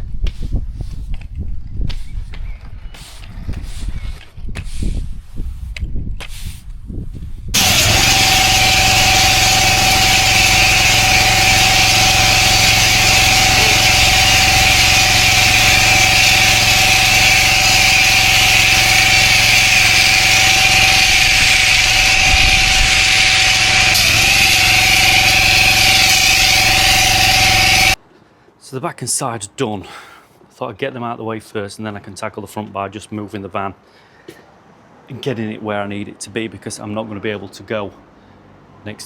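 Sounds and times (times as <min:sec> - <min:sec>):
pressure washer running: 0:07.6 - 0:28.0
water jet hissing: 0:07.6 - 0:28.0.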